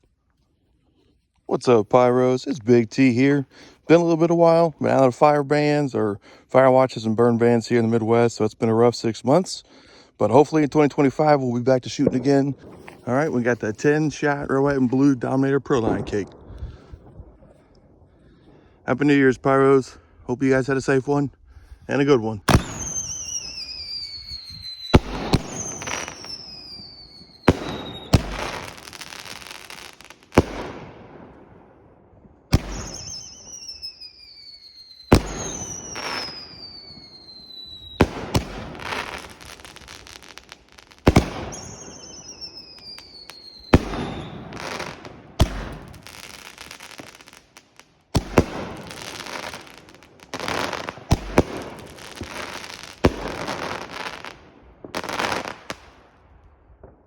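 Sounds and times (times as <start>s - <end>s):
firework bangs: 11.2s - 17.5s, 22.5s - 57.0s
firework crackling: 22.5s - 31.1s, 32.5s - 56.0s
firework whistle falling in pitch: 22.7s - 28.3s, 32.7s - 38.0s, 41.5s - 44.6s.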